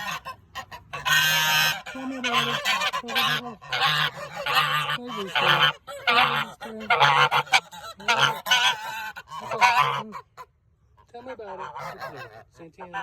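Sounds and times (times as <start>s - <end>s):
geese honking: 0.0s - 13.0s.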